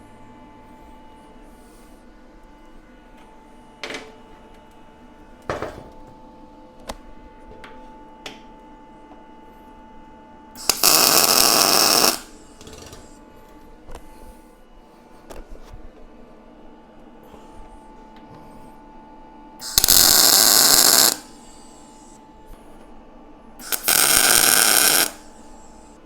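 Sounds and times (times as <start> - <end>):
welding arc crackling: 10.6 - 13.2, 19.6 - 22.1, 23.6 - 25.8.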